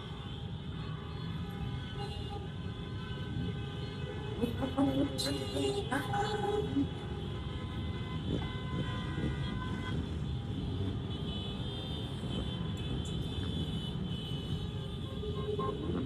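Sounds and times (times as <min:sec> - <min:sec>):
street traffic engines rumbling: 0:00.0 - 0:16.0.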